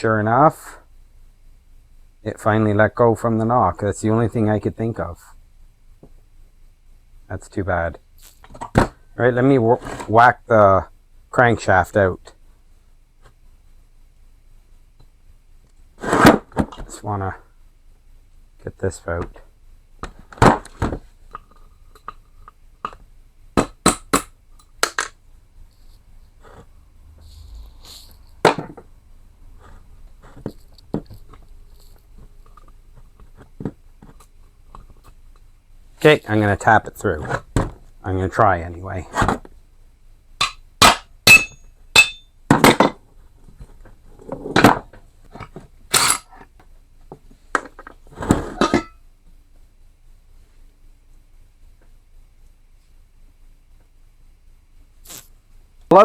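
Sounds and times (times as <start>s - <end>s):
hammer striking metal: 40.4s - 42.3s.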